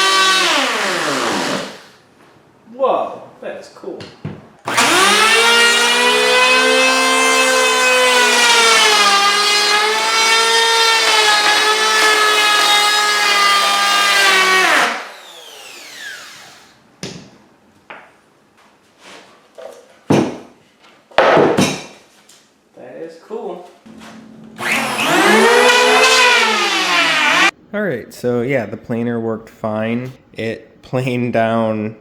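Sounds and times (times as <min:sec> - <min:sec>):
electric hand planer whining: 0:00.0 - 0:01.9, 0:04.7 - 0:16.7, 0:24.6 - 0:27.5.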